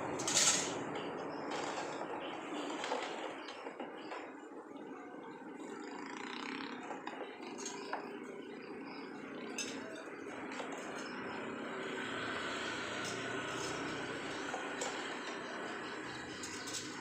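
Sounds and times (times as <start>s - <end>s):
crockery clinking: 9.6s - 10.1s.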